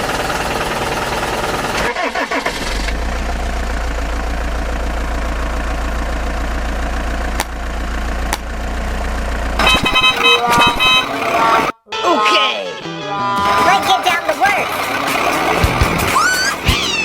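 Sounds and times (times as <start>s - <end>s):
short pitched horn toots: 9.6s - 16.6s
cartoon engine low rumble: 13.4s - 17.0s.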